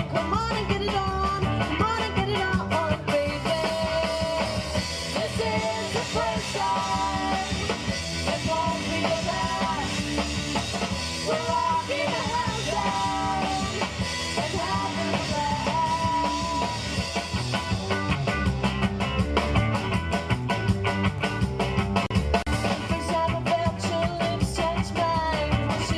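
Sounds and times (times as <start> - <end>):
rapid drum hits: 0.0 - 25.9
rock music with lead guitar: 0.0 - 25.9.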